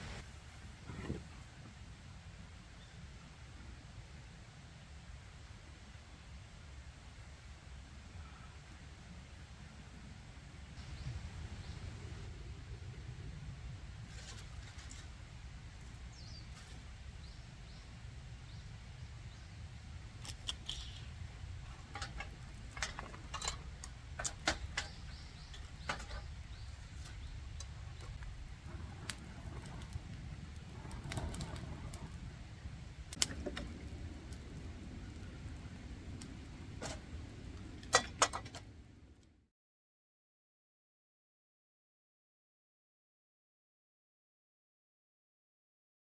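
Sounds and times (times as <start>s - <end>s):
low steady rumble: 0.0s - 39.4s
light clicks and rattles: 21.7s - 32.2s.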